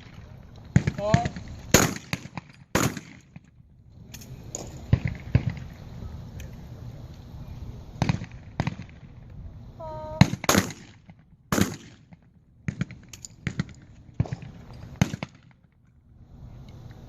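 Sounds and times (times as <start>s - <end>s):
shotgun shots: 0.0s - 3.5s, 8.0s - 9.1s, 10.2s - 15.6s
person calling: 9.8s - 10.3s.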